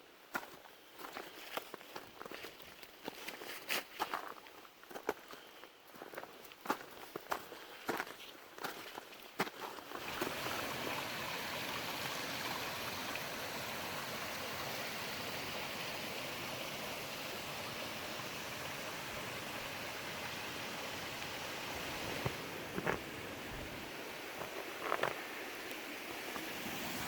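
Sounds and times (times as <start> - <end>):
stream water rushing: 9.6 - 27.0.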